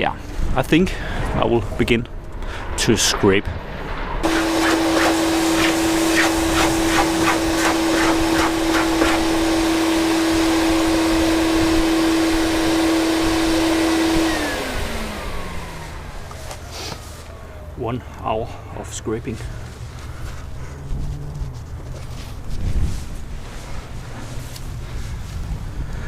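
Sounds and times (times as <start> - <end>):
scraping strokes on hull: 4.2 - 9.4
vacuum cleaner whining: 4.2 - 17.8.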